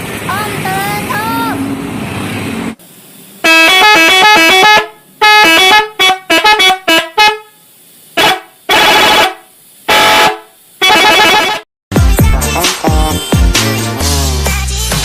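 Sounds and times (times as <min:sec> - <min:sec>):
musical air horn playing a tune: 0:03.4 - 0:07.6, 0:08.2 - 0:11.6.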